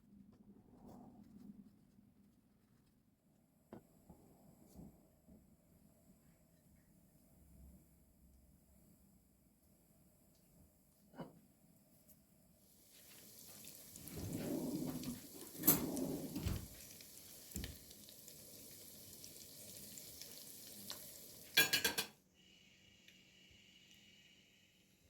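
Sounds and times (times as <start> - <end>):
food sizzling in a frying pan: 12.6 - 24.8.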